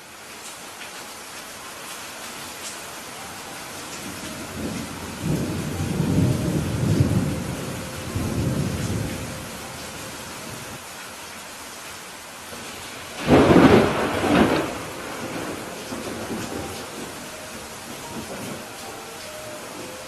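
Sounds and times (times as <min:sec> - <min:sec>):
steady rain: 0:00.0 - 0:20.0
thunder rumbling: 0:03.6 - 0:10.8, 0:12.5 - 0:20.0.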